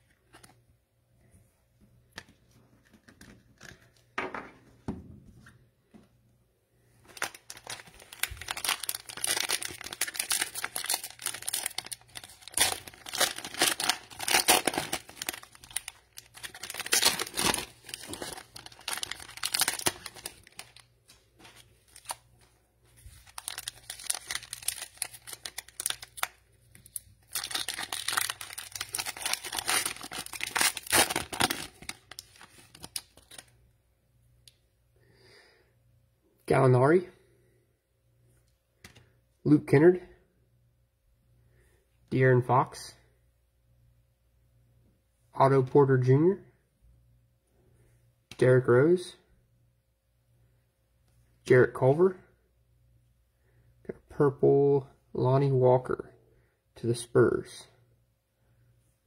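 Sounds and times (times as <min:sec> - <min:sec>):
cellophane wrapper crinkling: 0:07.0 - 0:33.5.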